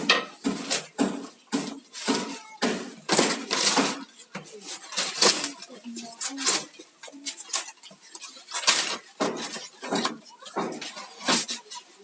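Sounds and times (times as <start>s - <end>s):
plastic packaging rustling: 3.1s - 12.0s.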